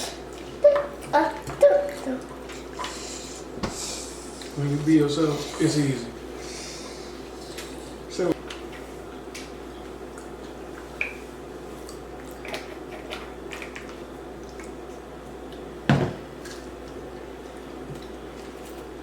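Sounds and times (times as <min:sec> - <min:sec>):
steady low hum: 0:00.0 - 0:19.0
wet chewing and mouth noises: 0:10.1 - 0:15.7.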